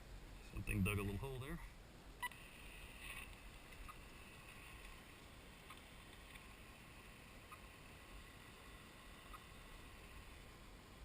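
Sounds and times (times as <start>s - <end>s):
faint outdoor ambience: 0.0s - 11.0s
soft ticks: 3.0s - 5.0s, 5.6s - 6.5s.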